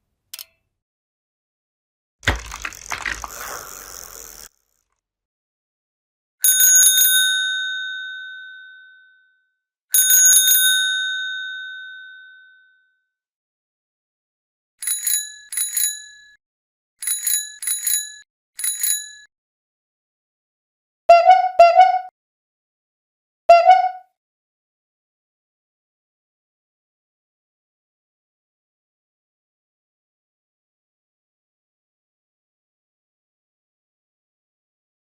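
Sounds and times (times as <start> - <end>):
bright bicycle bell short rings: 6.4 - 9.3, 10.0 - 12.9
bicycle bell trilling rings: 6.4 - 9.4, 10.0 - 12.8, 14.8 - 16.4, 17.0 - 19.3
short low-pitched tones: 21.1 - 22.1.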